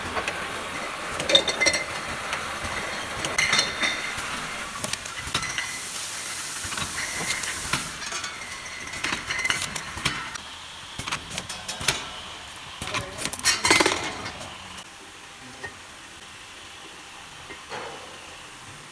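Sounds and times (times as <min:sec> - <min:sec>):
glass bottles clinking: 0:00.2 - 0:06.0, 0:06.6 - 0:10.4, 0:12.8 - 0:14.8
air hiss: 0:04.0 - 0:09.7.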